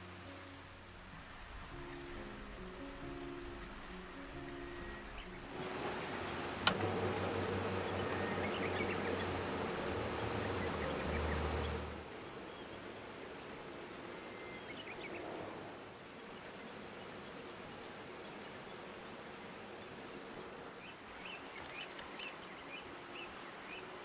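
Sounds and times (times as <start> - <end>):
river rushing: 0.0 - 24.0
steady rain: 0.0 - 24.0
small birds chirping: 4.7 - 12.8
low steady hum: 4.9 - 12.3.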